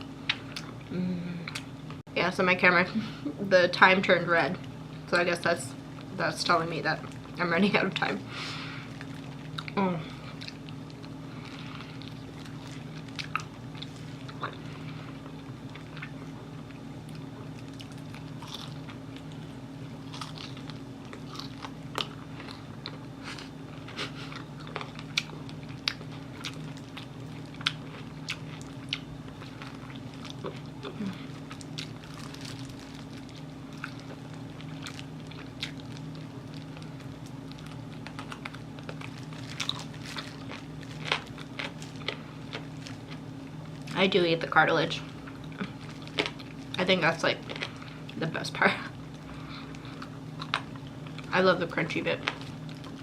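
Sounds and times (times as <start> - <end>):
steady low hum: 0.0 - 53.0
chewing fried chicken: 8.5 - 44.0, 45.0 - 46.8, 47.4 - 48.2, 48.9 - 51.3, 52.1 - 53.0
cartilage crunching: 17.1 - 23.4, 24.4 - 44.0, 45.1 - 46.8.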